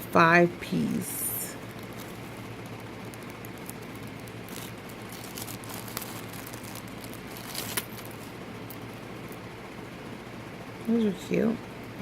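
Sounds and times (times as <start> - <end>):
plastic bag crinkling: 1.8 - 8.8.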